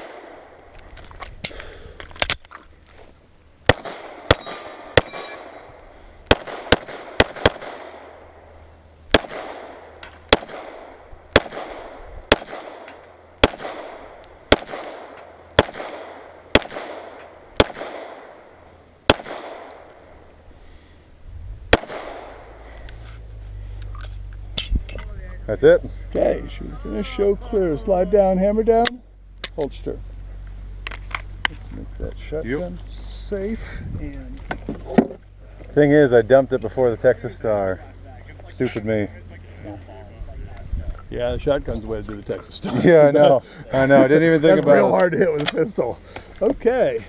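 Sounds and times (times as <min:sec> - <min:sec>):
gunshots with echo: 0:03.7 - 0:05.7, 0:06.3 - 0:08.2, 0:09.1 - 0:18.4, 0:19.1 - 0:19.9, 0:21.7 - 0:22.6.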